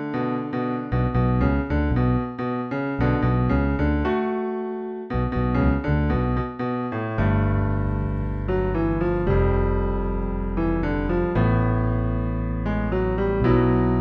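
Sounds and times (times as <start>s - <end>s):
electric piano chords: 0.0s - 6.4s, 7.2s - 14.0s
held bass: 5.1s - 6.4s, 7.2s - 12.7s.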